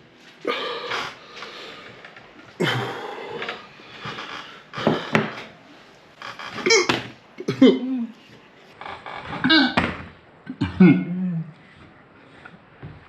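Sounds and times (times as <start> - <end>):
man hiccuping: 6.6 - 8.1, 10.5 - 11.5.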